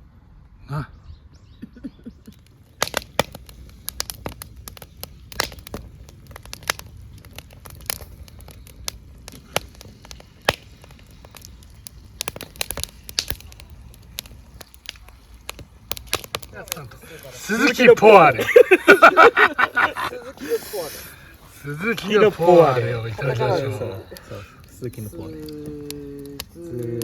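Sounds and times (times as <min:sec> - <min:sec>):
sharp pops and snaps of fire: 0:02.1 - 0:27.0
wood fire crackling: 0:02.1 - 0:27.0.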